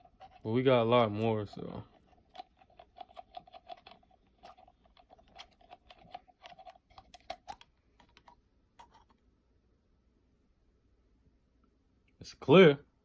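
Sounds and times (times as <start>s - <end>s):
slime being stirred: 0.0s - 9.2s.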